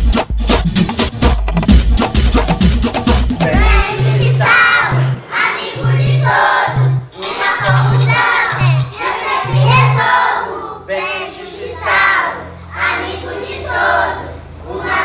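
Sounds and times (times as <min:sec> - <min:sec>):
deep bass notes: 0:00.0 - 0:07.1, 0:07.7 - 0:08.9, 0:09.5 - 0:10.0
backing track: 0:00.0 - 0:10.3
children singing funk song: 0:03.3 - 0:15.0.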